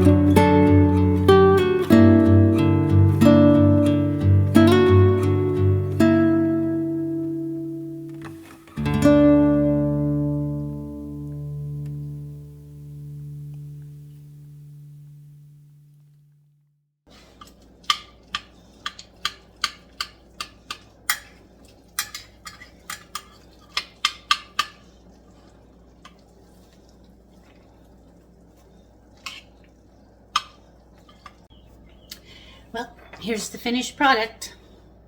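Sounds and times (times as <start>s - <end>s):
utensil clinking against dish: 22.0s - 24.8s.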